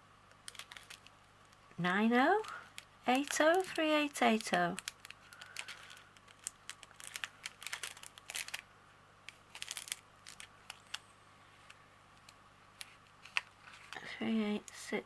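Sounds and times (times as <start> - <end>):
plastic bags crinkling: 0.4 - 8.7, 9.3 - 14.8.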